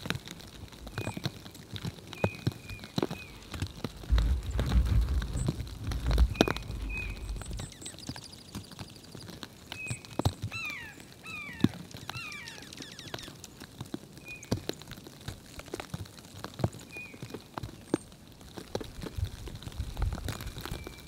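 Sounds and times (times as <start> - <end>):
songbirds calling: 0.8 - 14.8, 16.8 - 18.2, 20.3 - 21.0
high bird trill: 6.2 - 9.2.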